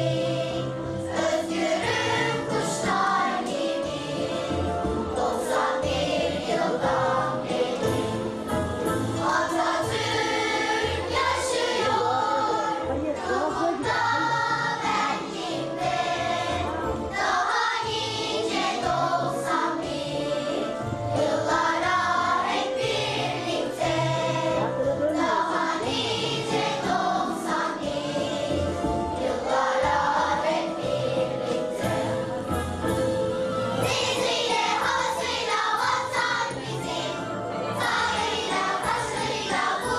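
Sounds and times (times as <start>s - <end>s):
children's choir singing: 0.0s - 39.9s
musical accompaniment: 0.0s - 39.9s.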